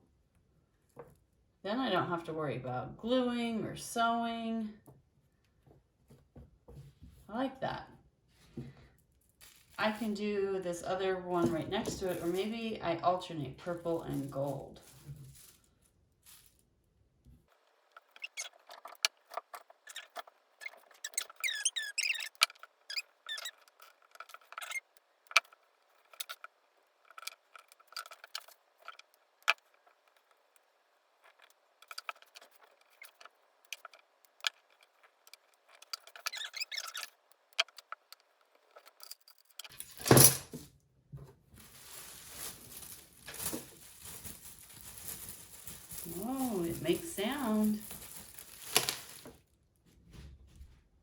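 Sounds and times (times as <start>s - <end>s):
plastic rustling: 8.4s - 49.6s
beads squeaking through plastic: 9.3s - 10.2s, 11.4s - 12.7s, 13.6s - 16.6s, 17.5s - 40.1s, 41.6s - 49.4s.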